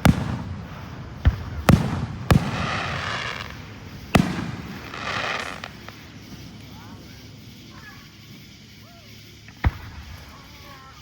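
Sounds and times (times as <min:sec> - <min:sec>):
fireworks booming: 0:00.0 - 0:11.0.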